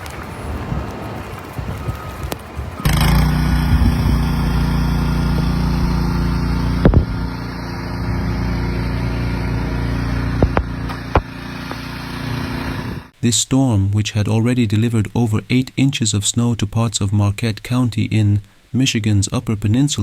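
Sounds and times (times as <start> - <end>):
wind buffeting microphone: 0.0 - 11.9
engine running: 2.8 - 13.2
sharp knocks: 6.8 - 7.3, 10.3 - 11.8.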